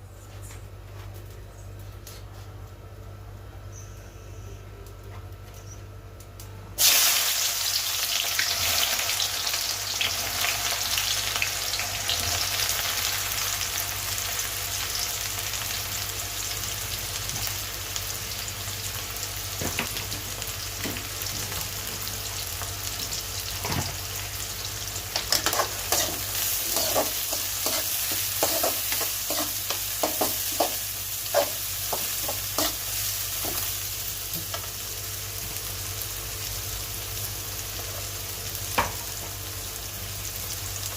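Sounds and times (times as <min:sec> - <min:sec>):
food sizzling in hot oil: 0:06.8 - 0:40.9
spatula scraping a pan: 0:25.4 - 0:32.8.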